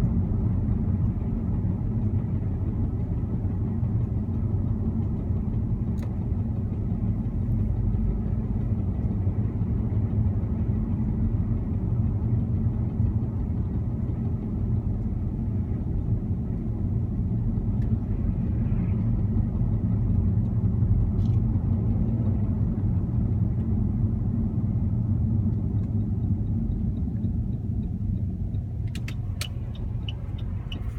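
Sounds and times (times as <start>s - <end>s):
car engine low rumble: 0.0s - 30.9s
sharp clicks: 28.6s - 30.9s.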